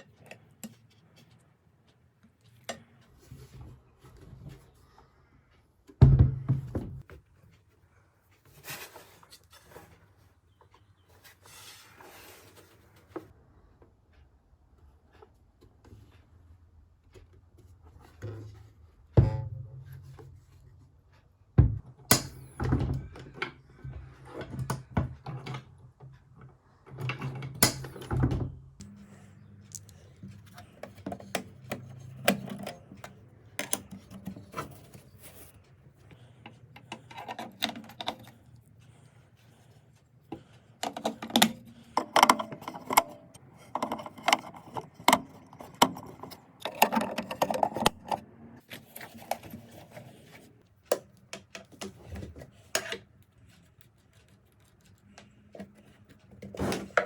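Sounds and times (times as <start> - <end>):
metal safe clicks and rattling: 26.9 - 29.1, 40.8 - 48.2.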